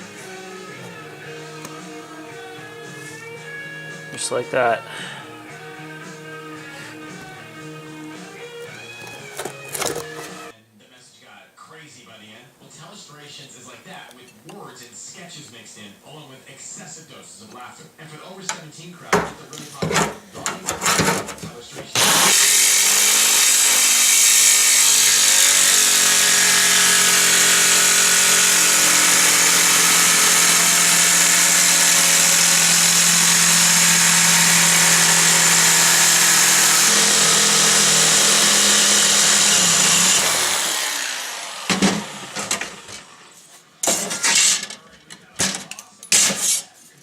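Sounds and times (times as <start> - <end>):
power grinder on sheet metal: 22.0 - 44.6.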